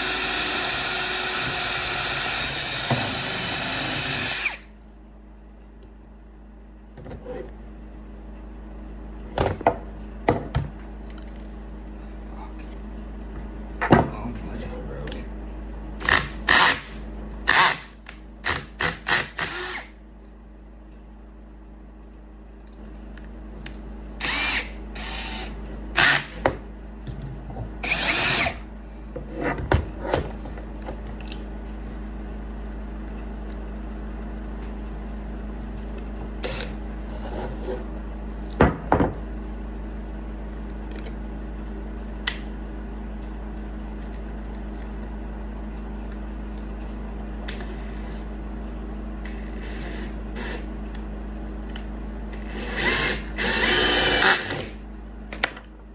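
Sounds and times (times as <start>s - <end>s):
power tool motor running: 0.0s - 4.7s, 16.0s - 19.9s, 24.2s - 26.4s, 27.8s - 28.6s, 52.4s - 54.8s.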